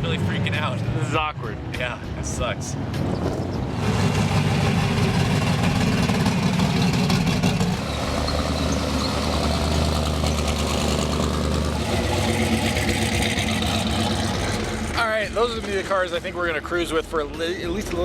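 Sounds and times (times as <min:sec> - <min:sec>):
car engine running: 0:03.7 - 0:16.2.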